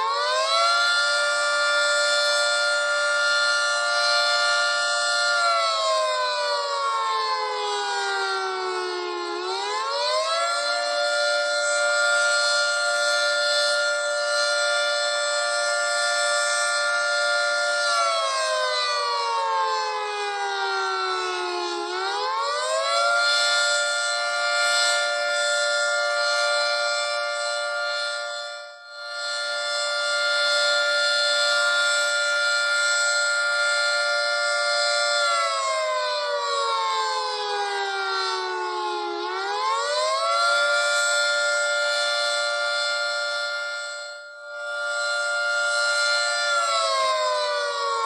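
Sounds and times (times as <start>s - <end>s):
siren wailing: 0.0s - 48.0s.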